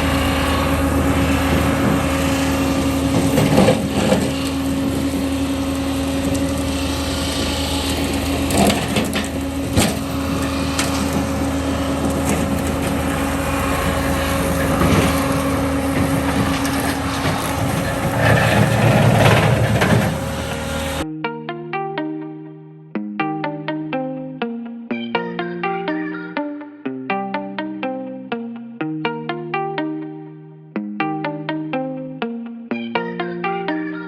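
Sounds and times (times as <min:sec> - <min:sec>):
mowing machine engine running: 0:00.0 - 0:21.0.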